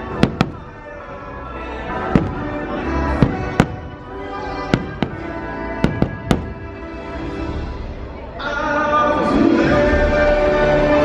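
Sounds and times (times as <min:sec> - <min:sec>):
fireworks bangs: 0:00.0 - 0:01.0, 0:02.0 - 0:07.1
show music: 0:00.0 - 0:11.0.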